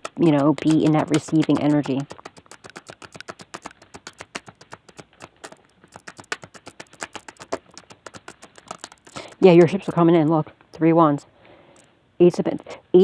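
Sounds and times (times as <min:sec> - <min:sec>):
cards being shuffled: 0:00.0 - 0:10.0.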